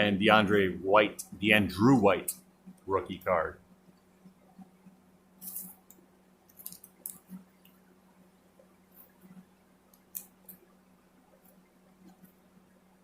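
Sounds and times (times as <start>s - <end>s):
faint steady hum: 0.0s - 13.0s
trading cards rustling and clicking: 6.5s - 7.4s.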